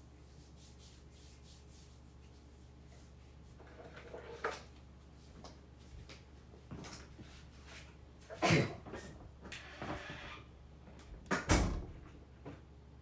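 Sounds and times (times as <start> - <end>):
door thudding shut: 11.5 - 11.9.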